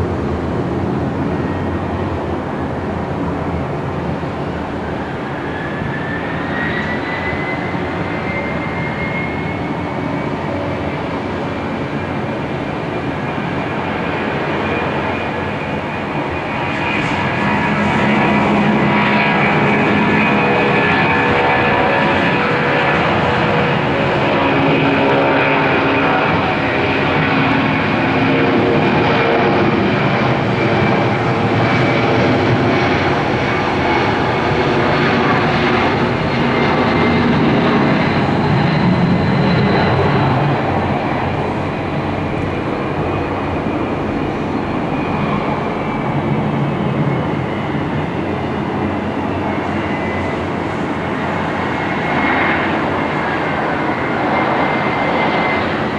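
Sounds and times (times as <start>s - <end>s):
jet engines running loudly: 0.0s - 55.9s
high engine whine: 13.3s - 55.9s.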